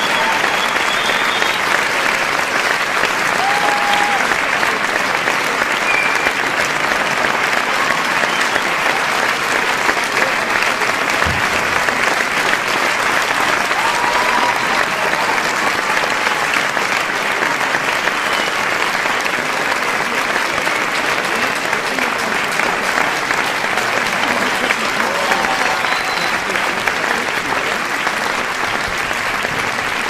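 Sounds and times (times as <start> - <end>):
audience applauding: 0.0 - 30.0
faint crowd shouts: 3.3 - 4.4, 13.6 - 15.7, 25.0 - 26.4.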